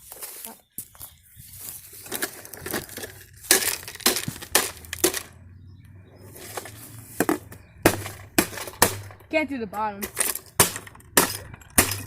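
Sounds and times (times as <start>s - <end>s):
hammer smashing coffee maker: 7.9s - 9.2s, 10.0s - 12.0s.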